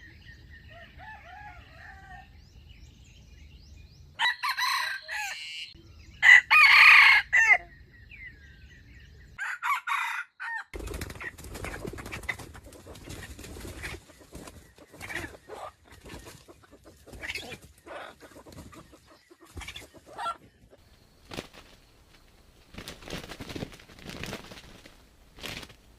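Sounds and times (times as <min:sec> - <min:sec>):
rooster crowing: 0:00.7 - 0:02.4, 0:04.2 - 0:07.7, 0:09.4 - 0:10.8
chicken clucks: 0:10.8 - 0:21.7.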